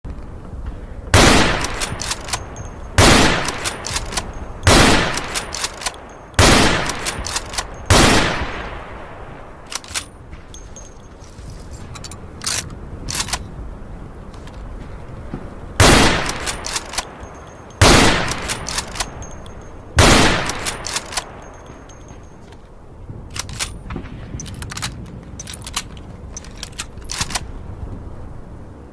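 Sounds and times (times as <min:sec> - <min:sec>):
rifle shots echoing: 0:01.1 - 0:10.2, 0:15.8 - 0:22.2
rifle bolt clicks: 0:01.4 - 0:08.2, 0:09.7 - 0:10.6, 0:11.8 - 0:13.5, 0:16.0 - 0:22.6, 0:23.3 - 0:23.8, 0:24.4 - 0:27.5.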